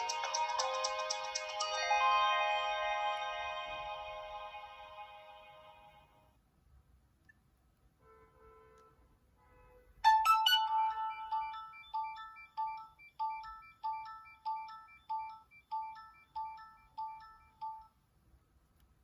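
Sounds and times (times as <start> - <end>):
mobile phone ringtone: 0.0 - 4.6, 10.1 - 17.9.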